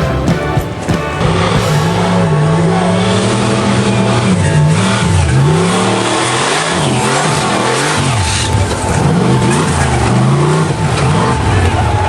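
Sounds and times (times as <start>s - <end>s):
truck engine revving hard: 0.0s - 12.0s.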